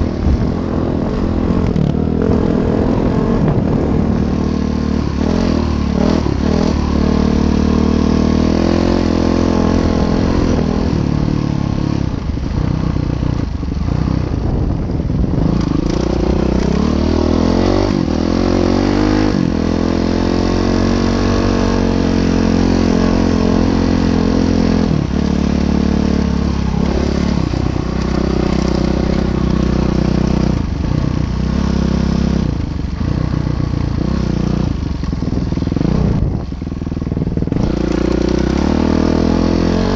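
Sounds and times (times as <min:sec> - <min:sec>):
low rumble: 0:00.0 - 0:07.3, 0:09.9 - 0:17.4, 0:23.0 - 0:38.4.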